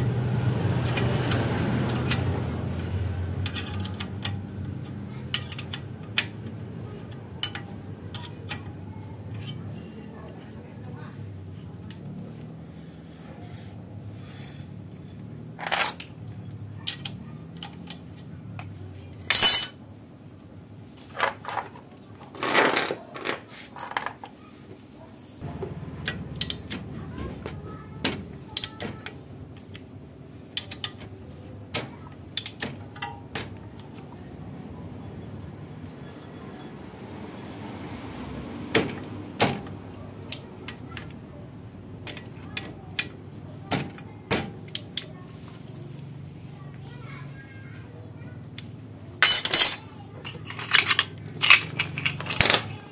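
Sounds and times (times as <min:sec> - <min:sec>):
metal tools clinking and knocking: 0:00.8 - 0:10.0, 0:15.6 - 0:20.0, 0:21.0 - 0:24.3, 0:30.5 - 0:34.2, 0:48.6 - 0:52.8
sharp ringing metal clink: 0:19.3 - 0:20.0, 0:49.2 - 0:50.0.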